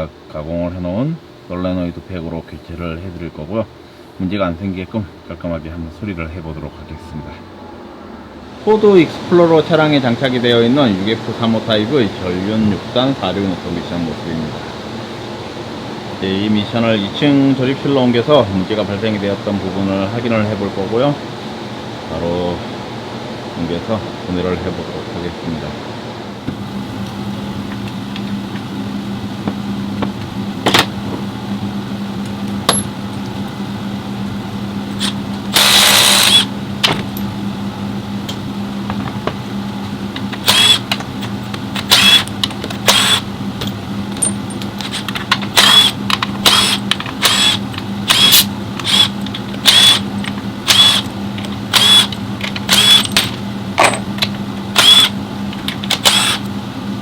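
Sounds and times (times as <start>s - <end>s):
steady mechanical hum: 0.0s - 57.0s
power tool bursts: 35.0s - 36.5s, 40.4s - 41.0s, 41.7s - 43.3s, 44.8s - 54.0s, 54.7s - 55.2s, 55.8s - 56.5s.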